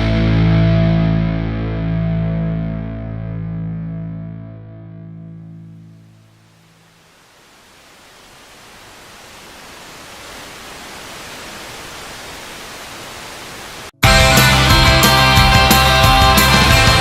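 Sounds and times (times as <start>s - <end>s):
loud rock music: 0.0s - 5.7s, 14.0s - 17.0s
steady hiss: 6.2s - 13.9s.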